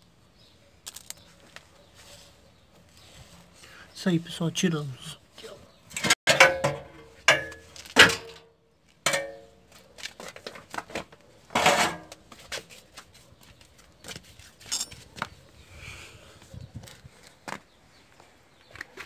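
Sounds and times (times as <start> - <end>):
metal parts and tools clinking: 5.9 - 8.5, 14.6 - 15.1.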